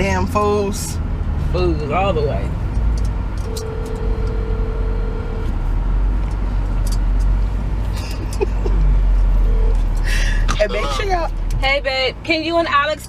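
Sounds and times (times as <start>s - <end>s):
car idling rumble: 1.6s - 13.0s
phone ringback tone: 3.5s - 5.5s.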